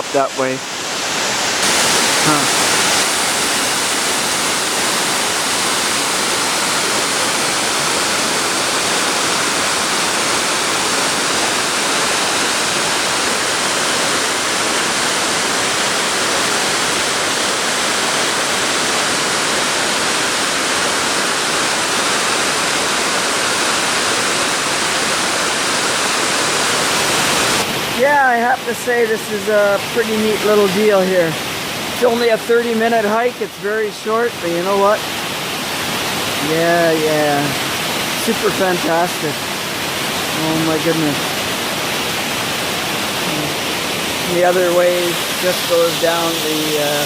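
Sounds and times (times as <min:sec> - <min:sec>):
waterfall roaring: 0:00.0 - 0:47.0.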